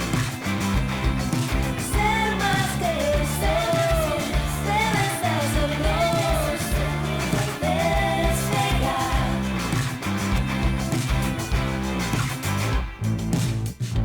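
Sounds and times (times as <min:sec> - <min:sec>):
bass guitar: 0:00.0 - 0:14.0
drums: 0:00.0 - 0:14.0
woman singing: 0:01.8 - 0:09.6.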